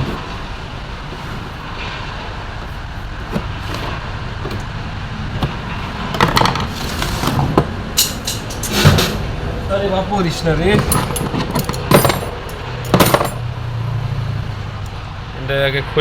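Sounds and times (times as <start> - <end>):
clicks and knocks of parts: 6.2 - 9.2, 10.7 - 13.4.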